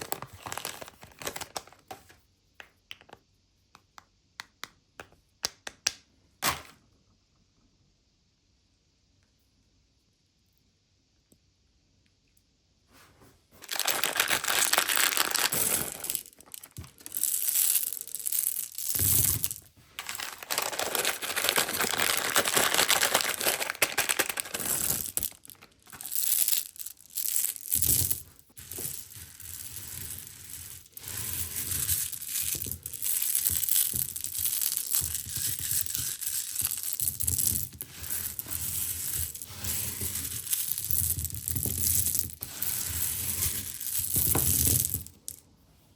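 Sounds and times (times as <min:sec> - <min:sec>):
hard candies rattling: 0:00.0 - 0:01.8, 0:13.6 - 0:42.8, 0:43.6 - 0:45.4
packaging crinkling: 0:00.0 - 0:01.9, 0:13.6 - 0:18.6, 0:20.0 - 0:27.8.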